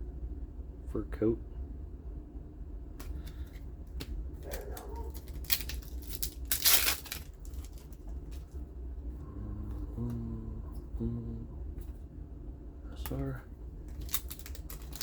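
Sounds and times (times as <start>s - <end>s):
clicks and rustling: 3.0s - 8.6s, 13.9s - 15.0s
wrapper ripping: 4.4s - 8.4s, 14.0s - 15.0s
card pack wrapper crinkling: 4.4s - 8.6s, 13.9s - 15.0s.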